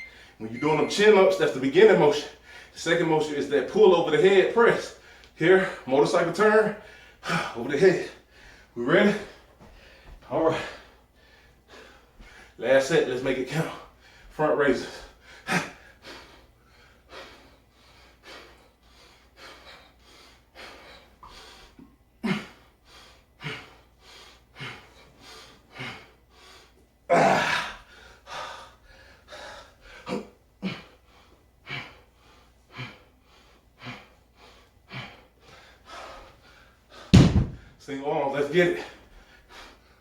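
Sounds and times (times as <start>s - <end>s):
man breathing hard: 6.7s - 7.6s, 8.2s - 12.6s, 13.8s - 37.8s, 38.8s - 40.0s.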